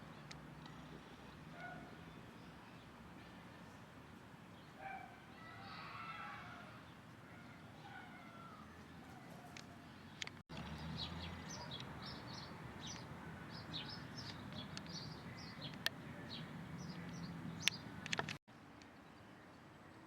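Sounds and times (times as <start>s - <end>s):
outdoor background noise: 0.0s - 20.0s
small birds chirping: 6.6s - 18.4s
sharp clicks: 11.7s - 18.4s.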